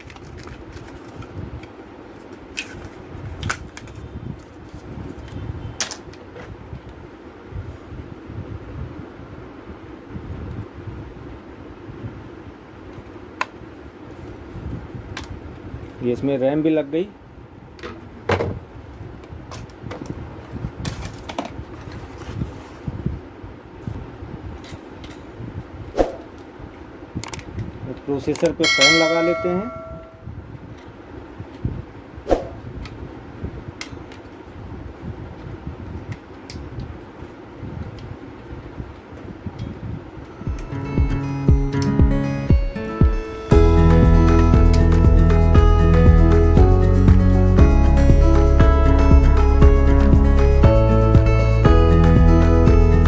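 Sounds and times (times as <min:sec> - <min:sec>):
steady low hum: 0:28.6 - 0:30.4, 0:40.3 - 0:53.0.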